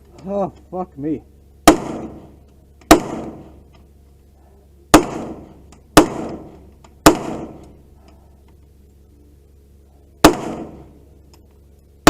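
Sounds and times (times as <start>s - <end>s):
gunshots with echo: 1.7s - 2.3s, 2.9s - 3.5s, 5.0s - 7.6s, 10.2s - 10.9s.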